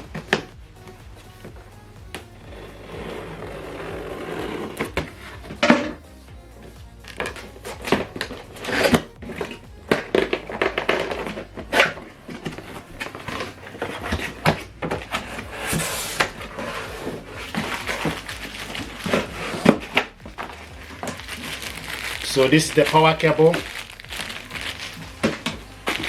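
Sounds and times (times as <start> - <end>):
packaging rustling: 7.0 - 26.0.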